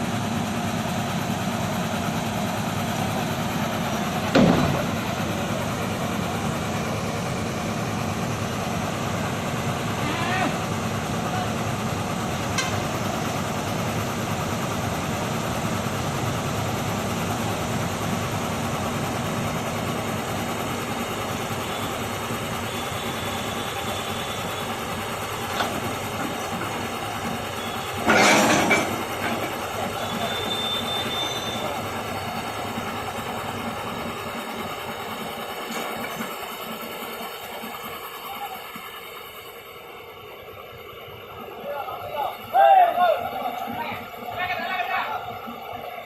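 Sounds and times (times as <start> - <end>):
diesel machinery rumbling: 0.0 - 46.0
faint high squeal: 27.5 - 28.3, 30.0 - 32.4.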